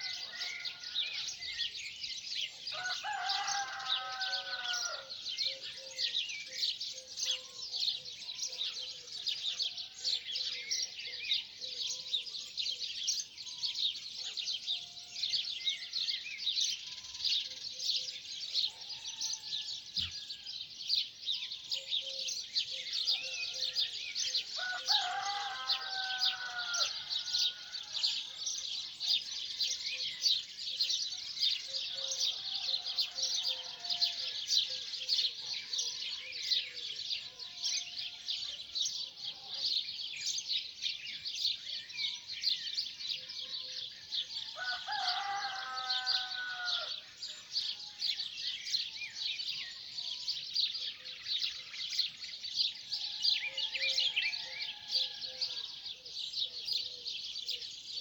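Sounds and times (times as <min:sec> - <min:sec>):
rooster crowing: 0:00.0 - 0:01.5, 0:02.7 - 0:05.2, 0:24.5 - 0:28.3, 0:32.0 - 0:34.6, 0:44.5 - 0:47.0, 0:53.3 - 0:55.7.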